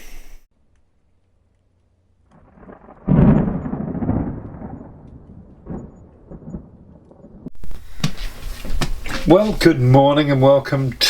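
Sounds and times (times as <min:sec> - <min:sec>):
thunder-like rumble and boom: 0:02.3 - 0:07.7.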